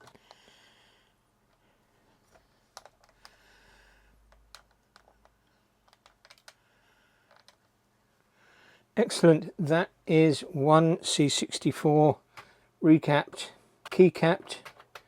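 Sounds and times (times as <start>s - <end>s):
keyboard keys clicking: 4.3s - 6.6s, 7.3s - 7.7s.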